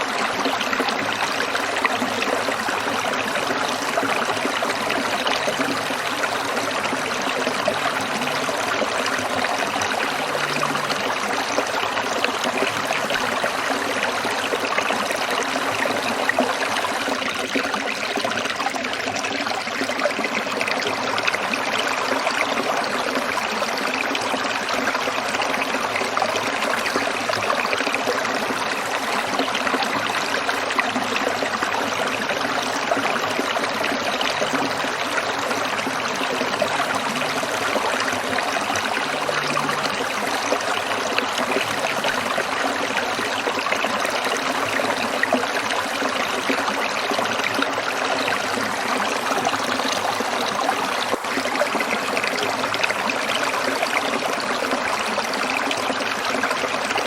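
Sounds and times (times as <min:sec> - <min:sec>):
stream water over rocks: 0:00.0 - 0:57.0.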